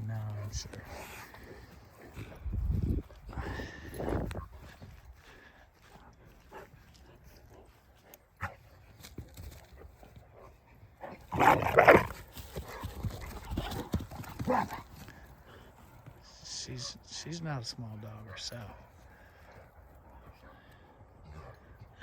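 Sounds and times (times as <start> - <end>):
large dog vocalizing: 11.2 - 12.2.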